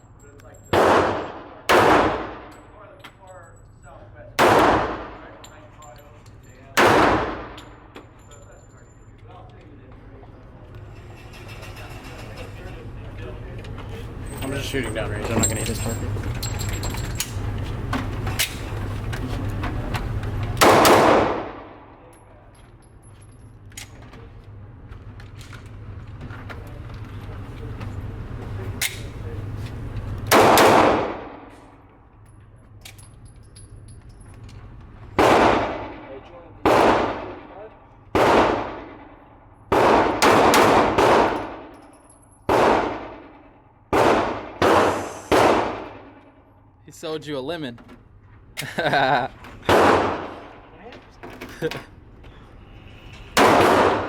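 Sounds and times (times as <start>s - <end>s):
steady low hum: 0.0s - 54.0s
handgun shot: 0.7s - 2.5s, 6.8s - 7.6s, 20.6s - 21.9s, 30.3s - 31.5s, 35.2s - 36.0s, 36.7s - 37.5s, 38.2s - 39.1s, 39.7s - 41.7s, 42.5s - 46.2s, 49.7s - 50.4s, 53.4s - 54.0s.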